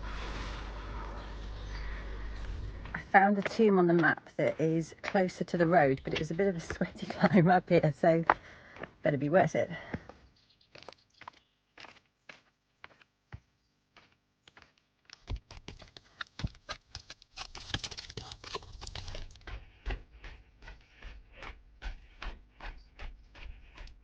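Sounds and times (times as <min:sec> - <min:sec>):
low rumble: 0:00.0 - 0:03.2
footsteps crunching on stony ground: 0:00.0 - 0:09.0, 0:09.7 - 0:24.0.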